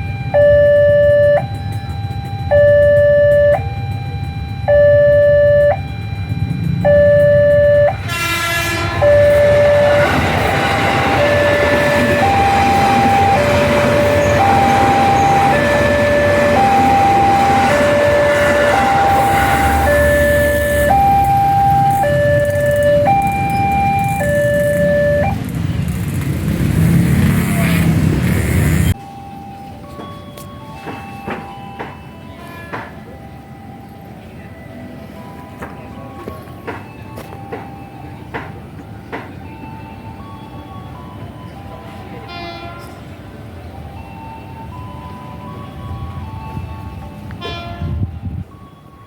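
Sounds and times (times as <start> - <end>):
level crossing warning siren: 0.0 - 25.4, 28.4 - 42.6, 43.4 - 49.0
train running noise: 0.0 - 49.0
train horn: 8.0 - 19.9, 42.2 - 43.1, 47.4 - 48.2.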